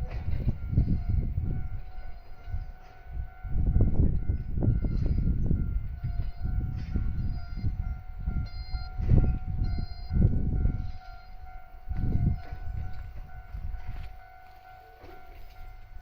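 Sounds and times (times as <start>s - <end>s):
wheels clacking over rail joints: 0.0s - 5.2s, 6.0s - 16.0s
level crossing signal ringing: 0.0s - 16.0s
train cars rumbling: 0.0s - 16.0s.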